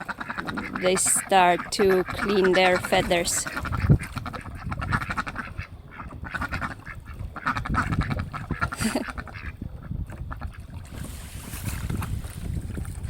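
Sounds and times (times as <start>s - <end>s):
ducks quacking: 0.0s - 9.7s.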